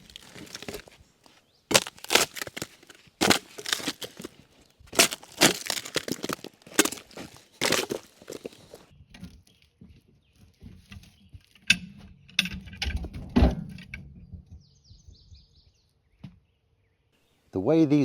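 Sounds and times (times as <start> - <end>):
bark tearing off log: 0.0 - 1.0, 1.7 - 4.3, 5.0 - 8.8.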